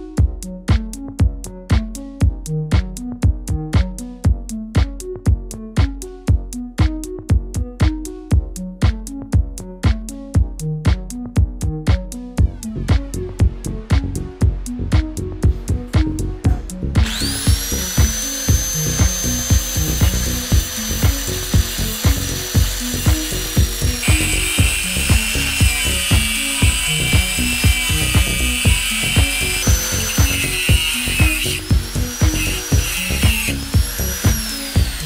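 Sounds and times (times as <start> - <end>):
electronic music with beat: 0.0 - 35.0
power tool whining: 17.0 - 35.0.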